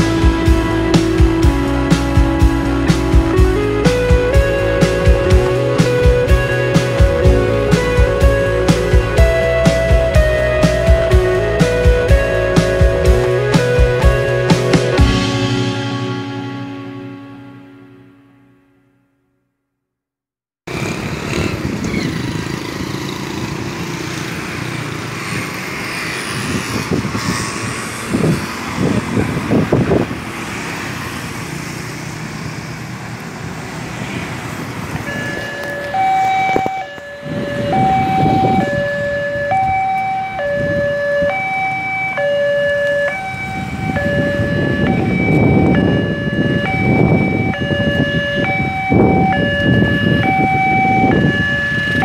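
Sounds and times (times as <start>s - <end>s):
traffic noise: 0.0s - 18.2s, 20.7s - 52.0s
two-tone emergency siren: 34.8s - 52.0s.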